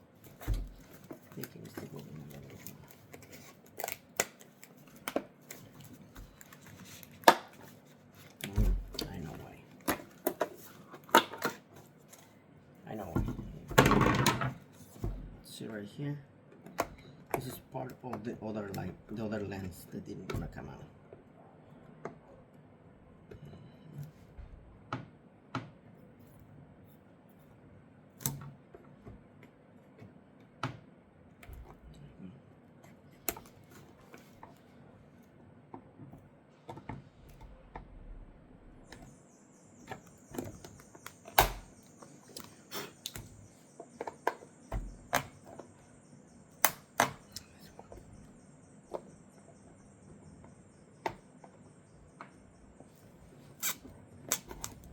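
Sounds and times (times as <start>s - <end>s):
hard plastic parts clicking and knocking: 13.0s - 15.4s.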